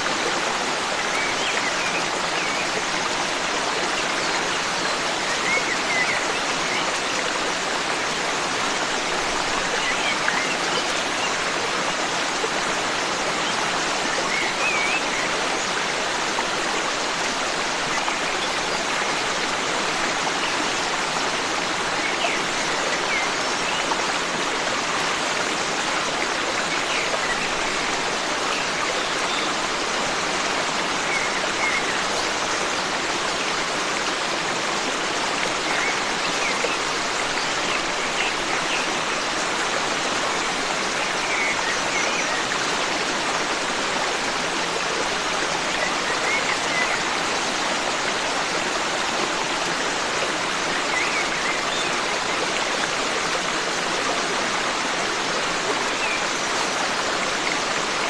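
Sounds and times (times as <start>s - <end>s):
stream water rushing: 0.0s - 58.0s.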